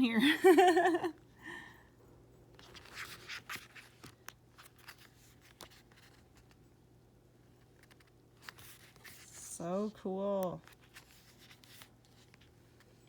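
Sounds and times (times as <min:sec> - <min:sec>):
photobook pages rustling and turning: 0:02.5 - 0:06.6, 0:07.4 - 0:13.0.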